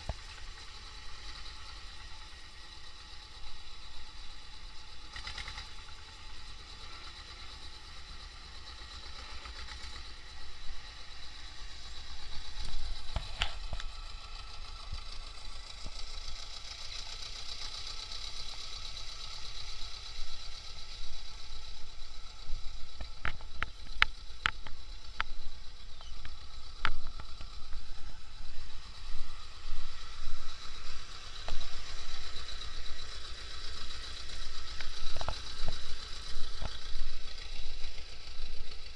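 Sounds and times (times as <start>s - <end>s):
diesel tractor engine running: 0.0s - 38.9s.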